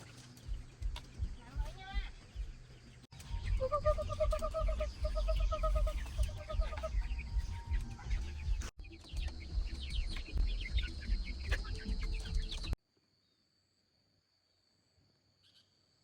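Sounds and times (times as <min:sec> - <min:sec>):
chickens clucking: 0:00.0 - 0:12.8
low outdoor rumble: 0:00.0 - 0:12.8.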